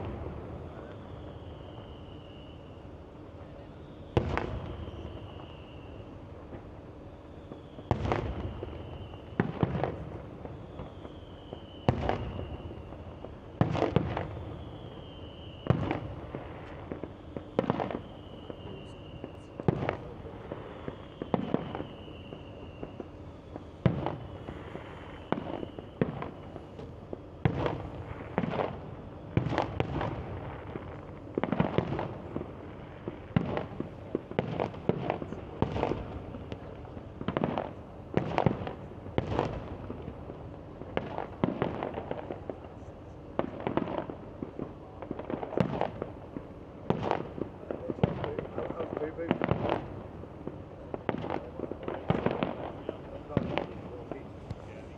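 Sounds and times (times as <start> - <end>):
fireworks bursting: 0.0 - 2.8, 3.5 - 54.9
high whistle falling in pitch: 0.6 - 2.8, 3.8 - 6.2, 10.5 - 13.4, 14.2 - 16.2, 17.0 - 19.8, 20.7 - 26.6.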